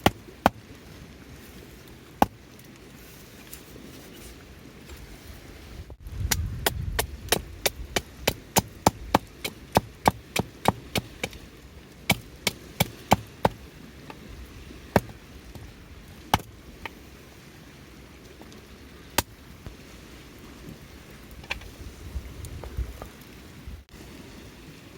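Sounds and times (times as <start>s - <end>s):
sharp wooden knocks: 6.2s - 11.4s, 12.1s - 13.6s.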